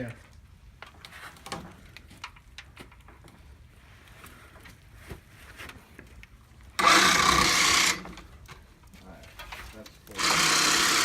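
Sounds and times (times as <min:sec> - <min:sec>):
electric winch running: 0:06.8 - 0:08.2, 0:10.1 - 0:11.0.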